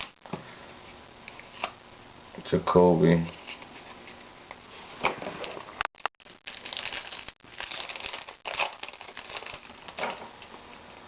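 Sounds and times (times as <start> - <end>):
wrapper crinkling and tearing: 5.4 - 10.5.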